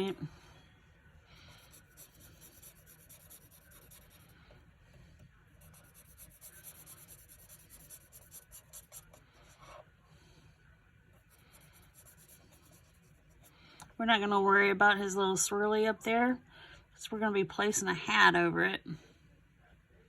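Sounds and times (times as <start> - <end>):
marker tip scratching on card: 1.6 - 4.3, 5.6 - 9.8, 11.3 - 13.2.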